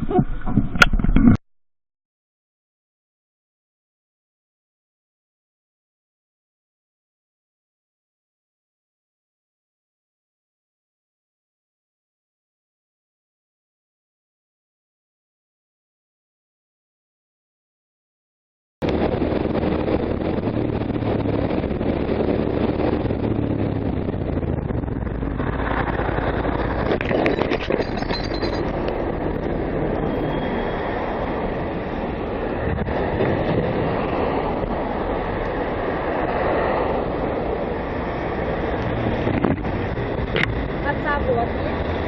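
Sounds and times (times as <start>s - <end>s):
vehicle engine and road noise: 18.8s - 42.0s.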